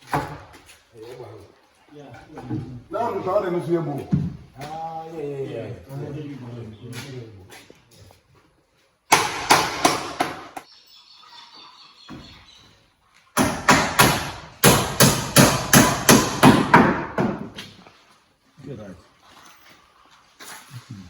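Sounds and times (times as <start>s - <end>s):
hammering on wooden boards: 9.1s - 10.7s, 13.4s - 17.6s.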